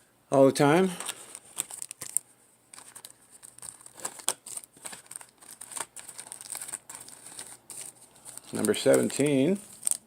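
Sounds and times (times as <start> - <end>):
wrapper crinkling: 0.9 - 10.0.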